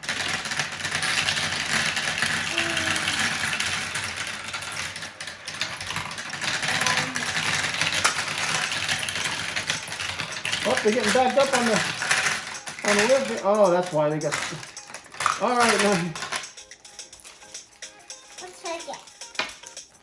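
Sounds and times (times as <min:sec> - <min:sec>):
marbles clattering down plastic tracks: 0:00.0 - 0:20.0.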